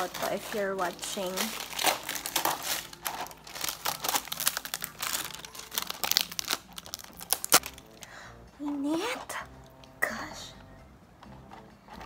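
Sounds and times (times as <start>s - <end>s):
plastic wrapping crinkling and tearing: 0.0s - 8.1s
plastic wrapping snapping: 0.0s - 8.1s.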